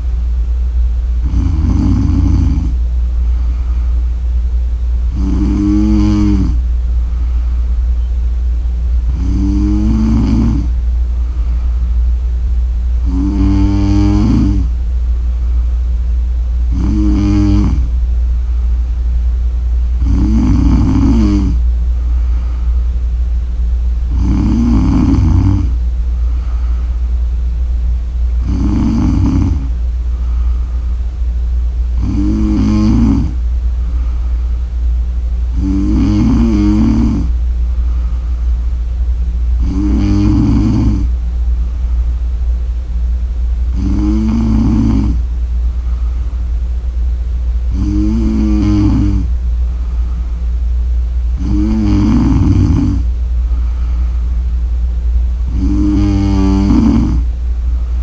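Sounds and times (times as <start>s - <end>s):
steady low hum: 0.0s - 58.0s
woman snoring: 1.2s - 2.8s, 5.1s - 6.6s, 9.1s - 10.8s, 13.0s - 14.8s, 16.7s - 17.9s, 20.0s - 21.6s, 24.1s - 26.8s, 28.4s - 30.8s, 32.0s - 33.4s, 35.5s - 37.4s, 39.6s - 41.2s, 43.7s - 45.3s, 47.7s - 50.1s, 51.3s - 53.1s, 55.4s - 57.3s.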